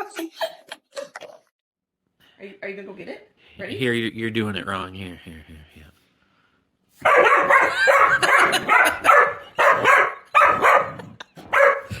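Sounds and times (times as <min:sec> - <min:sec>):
dog barking and yipping: 0:07.0 - 0:12.0.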